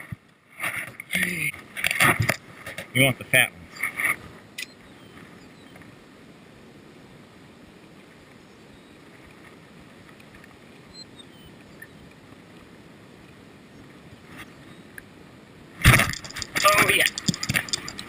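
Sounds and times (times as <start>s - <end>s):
low rushing background noise: 0.0s - 18.0s
faint high chirp: 4.6s - 5.8s, 8.4s - 9.0s, 10.9s - 12.1s, 13.7s - 15.0s.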